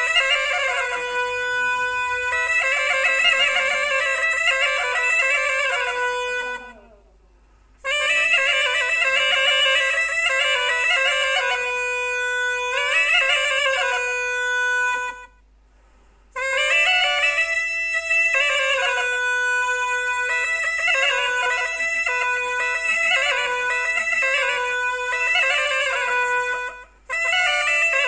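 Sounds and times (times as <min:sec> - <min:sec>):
reed pipe folk melody: 0:00.0 - 0:28.0.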